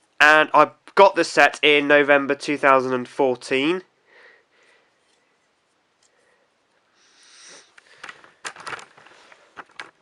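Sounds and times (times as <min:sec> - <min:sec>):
person sniffing: 0:06.9 - 0:07.8.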